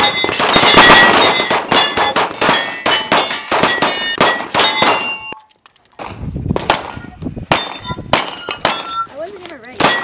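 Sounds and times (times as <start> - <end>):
steel targets clanging: 0.0 - 5.4.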